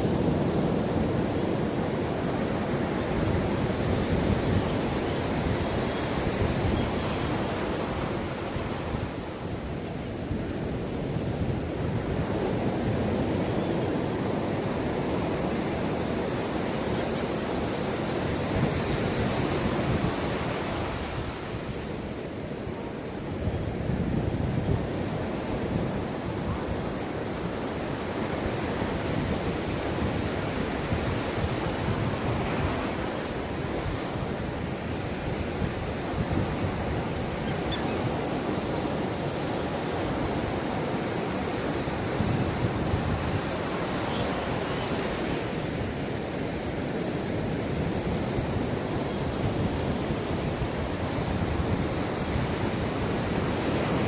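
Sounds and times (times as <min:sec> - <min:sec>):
ocean surf washing onto beach: 0:00.0 - 0:54.0.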